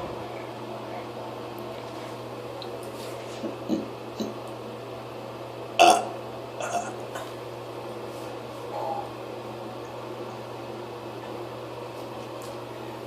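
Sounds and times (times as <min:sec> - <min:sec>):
steady low hum: 0:00.0 - 0:13.0
person making throat sounds: 0:03.4 - 0:04.4, 0:05.8 - 0:07.2.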